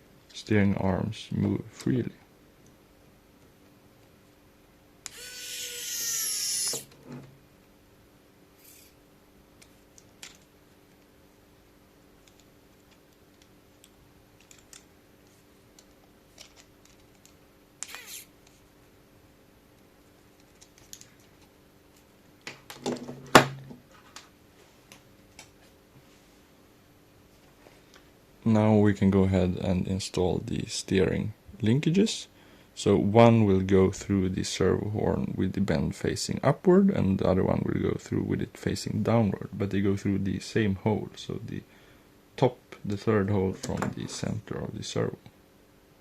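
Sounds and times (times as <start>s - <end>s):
electric screwdriver whine: 5.1s - 6.9s
small parts clicking: 8.6s - 9.0s, 12.2s - 14.9s, 15.8s - 18.6s, 20.4s - 21.5s.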